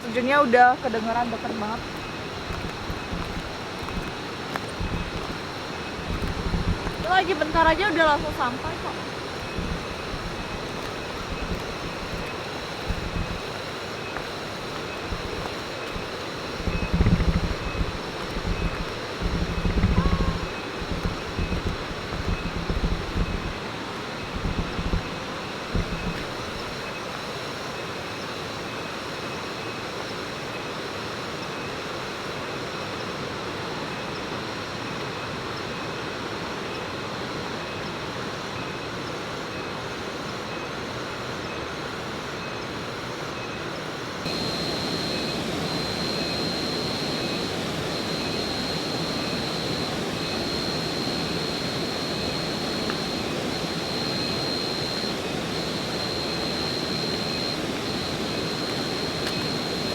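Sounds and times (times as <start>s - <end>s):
thin high pulsing tone: 0.8s - 23.6s, 44.3s - 59.9s.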